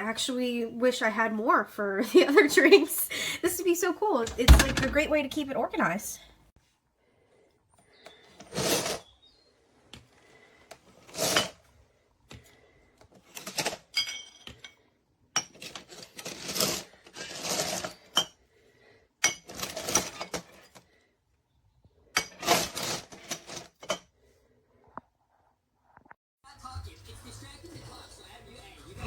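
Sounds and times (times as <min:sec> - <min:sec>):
drink cans clinking and rattling: 0:13.3 - 0:14.8.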